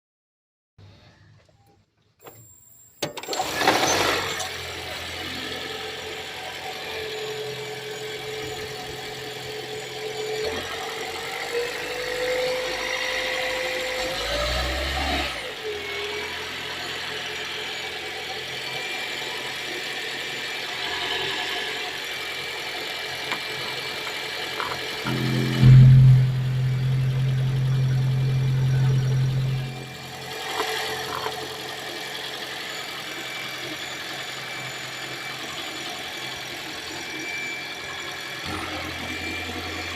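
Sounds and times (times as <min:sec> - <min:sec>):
car engine starting and running: 0:24.6 - 0:32.5.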